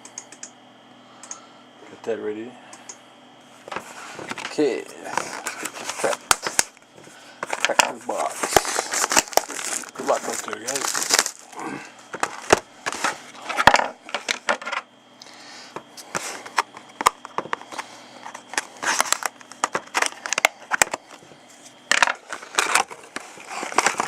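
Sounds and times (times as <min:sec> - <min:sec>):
sharp clicks: 0:00.0 - 0:00.6, 0:01.2 - 0:01.4
packs rustling: 0:03.7 - 0:06.7, 0:07.4 - 0:14.5, 0:21.9 - 0:24.0
cardboard crunching and tearing: 0:07.5 - 0:13.1, 0:22.1 - 0:24.0.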